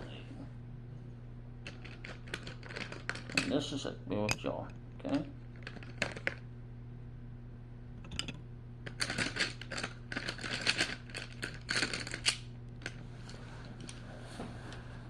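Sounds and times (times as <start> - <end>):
coloured pencils clattering: 9.0 - 12.3.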